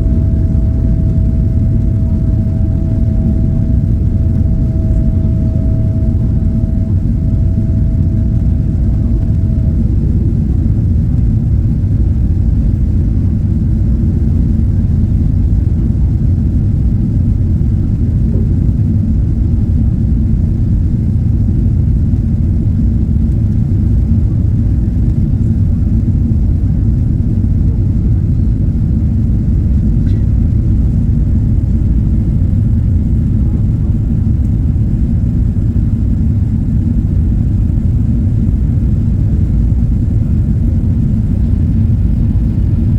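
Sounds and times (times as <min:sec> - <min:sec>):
airplane engines rumbling: 0:00.0 - 0:42.9.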